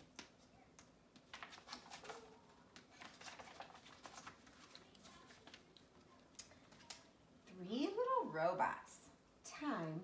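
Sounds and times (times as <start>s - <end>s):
light clicks of pages turning: 0.0s - 7.1s
book pages rustling: 1.1s - 7.1s.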